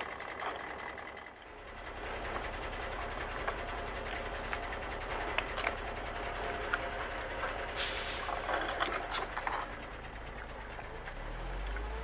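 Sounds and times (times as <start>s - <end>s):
short hiss: 7.8s - 8.3s.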